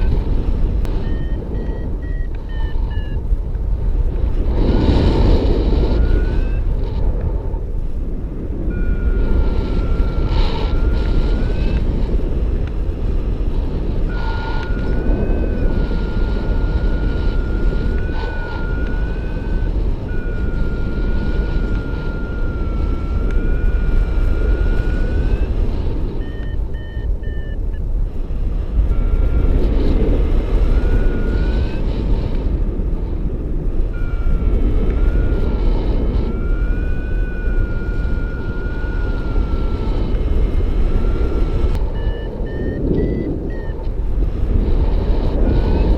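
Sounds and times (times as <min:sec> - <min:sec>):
thin wavering electronic tone: 0:00.0 - 0:07.7, 0:08.4 - 0:45.9
airflow rushing over microphone: 0:00.0 - 0:45.9
short higher beeps: 0:00.9 - 0:03.2, 0:05.8 - 0:06.7, 0:08.7 - 0:11.8, 0:14.1 - 0:27.8, 0:33.9 - 0:43.9.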